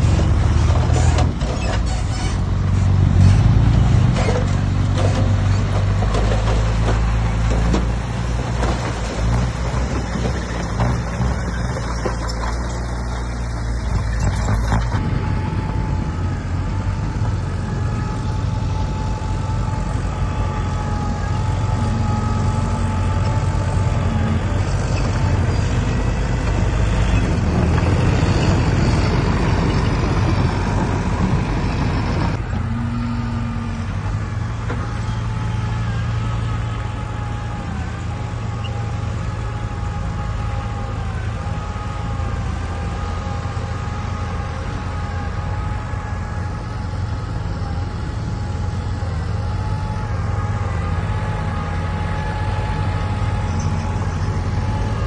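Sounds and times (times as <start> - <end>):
heavy diesel machinery running: 0.0 - 55.0.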